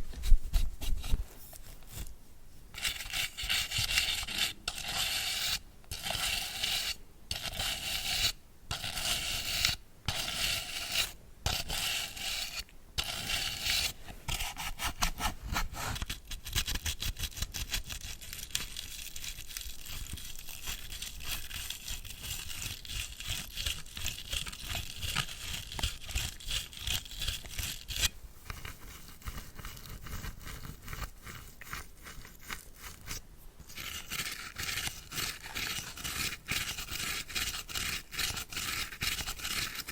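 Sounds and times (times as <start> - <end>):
bristle brush scrubbing: 18.3 - 39.9.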